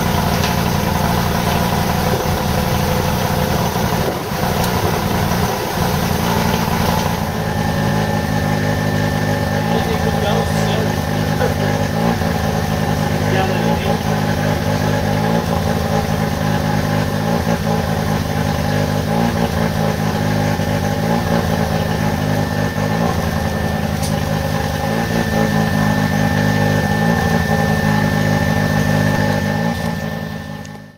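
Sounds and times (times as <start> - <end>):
rotary engine idling: 0.0 - 30.9
thin high tone: 6.5 - 12.0, 21.6 - 30.9.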